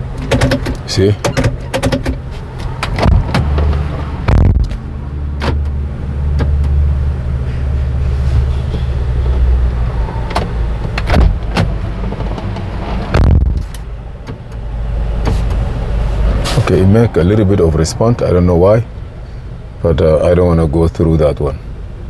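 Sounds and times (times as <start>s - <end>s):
car control clicks and clunks: 0.0s - 6.9s, 10.2s - 16.5s
steady low hum: 0.0s - 22.0s.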